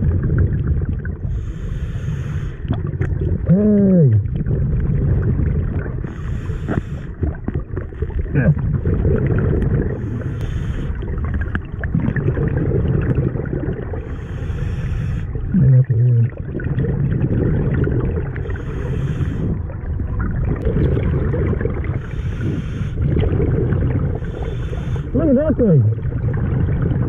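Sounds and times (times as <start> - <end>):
exhaled bubbles gurgling: 0.0 - 27.0
regulator inhale hiss: 1.3 - 2.7, 6.0 - 7.2, 10.0 - 11.0, 14.0 - 15.4, 18.5 - 19.6, 22.0 - 23.0, 24.2 - 25.1.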